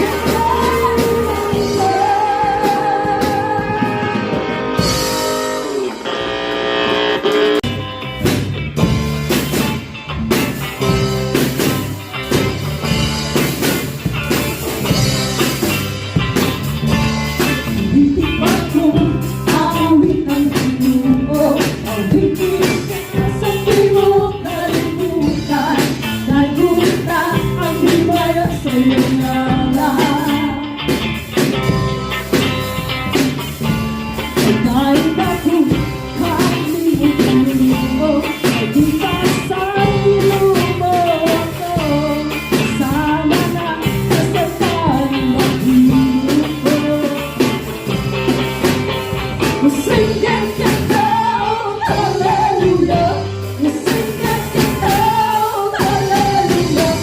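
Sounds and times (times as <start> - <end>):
person singing: 0.0 - 6.5, 17.8 - 30.8, 34.4 - 47.8, 49.6 - 57.0
drum kit beat: 0.0 - 57.0
guitar: 0.0 - 57.0.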